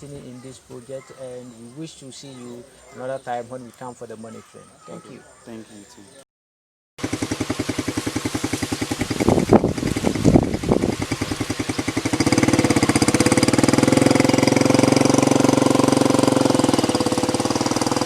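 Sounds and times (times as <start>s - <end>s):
small engine running: 7.0s - 18.0s.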